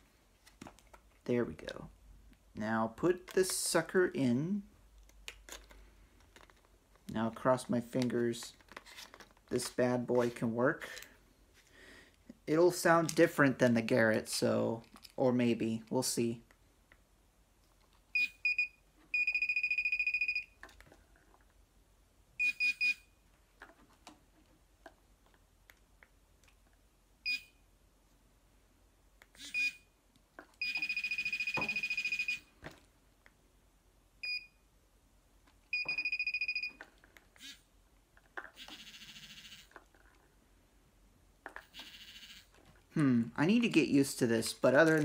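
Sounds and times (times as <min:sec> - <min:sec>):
metal detector beeping: 0:18.2 - 0:20.5, 0:30.6 - 0:32.5, 0:35.7 - 0:36.8.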